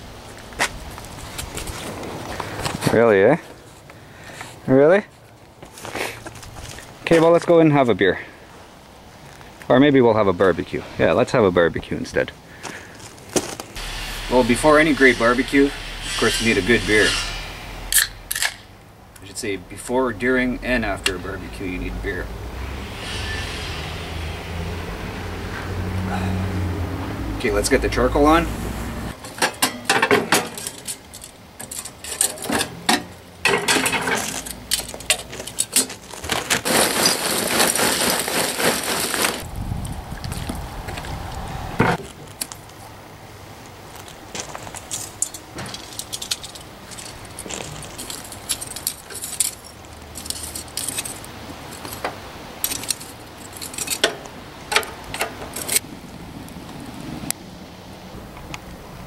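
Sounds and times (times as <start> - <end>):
clinks and knocks: 29.2 - 39.4, 44.8 - 55.8
charcoal pouring into grill: 35.3 - 39.5.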